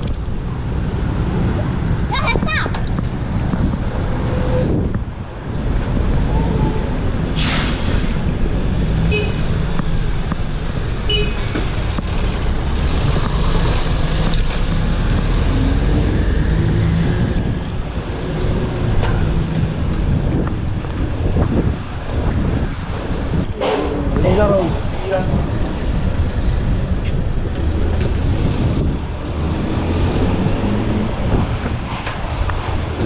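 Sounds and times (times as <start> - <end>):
passing cars and buses: 0.0 - 33.0
short loud hiss: 7.4 - 8.2.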